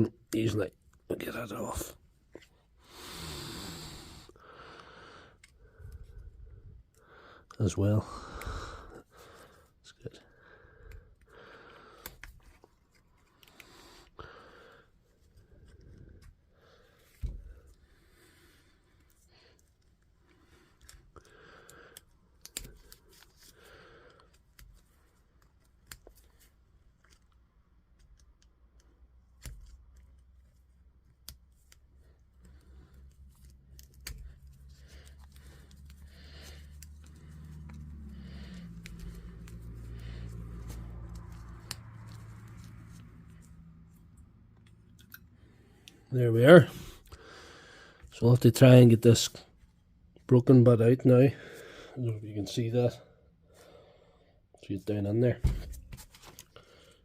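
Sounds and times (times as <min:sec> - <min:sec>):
low steady hum: 0:28.8 - 0:48.2.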